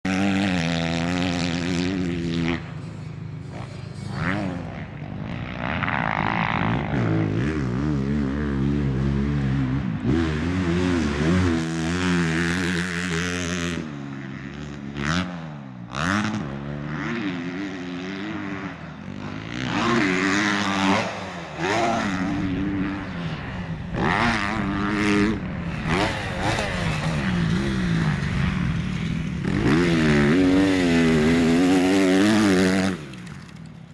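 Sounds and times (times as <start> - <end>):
dirt bike engines revving: 0.1 - 33.9.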